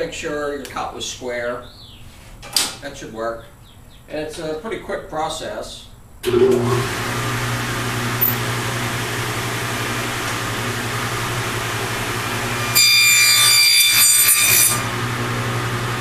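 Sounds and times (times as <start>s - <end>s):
table saw running: 6.3s - 16.0s
saw blade cutting wood: 12.4s - 14.9s.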